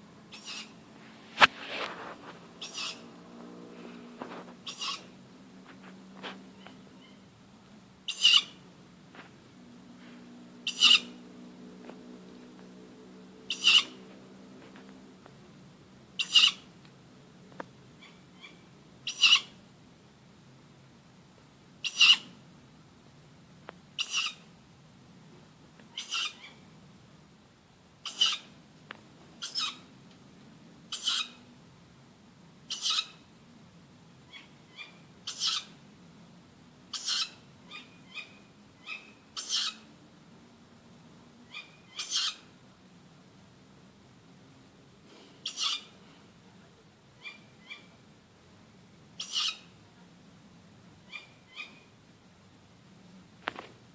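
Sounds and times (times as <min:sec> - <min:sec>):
owl shrieking calls: 0:00.3 - 0:00.8, 0:02.6 - 0:03.1, 0:04.6 - 0:05.2, 0:08.1 - 0:08.6, 0:10.6 - 0:11.2, 0:13.5 - 0:14.0, 0:16.2 - 0:16.7, 0:18.0 - 0:19.6, 0:21.8 - 0:22.4, 0:24.0 - 0:24.5, 0:25.9 - 0:26.6, 0:28.0 - 0:28.5, 0:29.4 - 0:29.9, 0:30.9 - 0:31.4, 0:32.7 - 0:33.2, 0:34.3 - 0:35.8, 0:36.9 - 0:39.8, 0:41.5 - 0:42.5, 0:45.4 - 0:45.9, 0:47.2 - 0:48.0, 0:49.2 - 0:49.7, 0:51.1 - 0:51.9.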